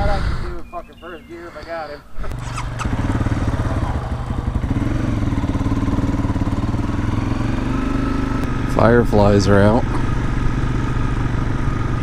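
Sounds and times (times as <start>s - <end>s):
dirt bike engine running: 2.2s - 12.0s.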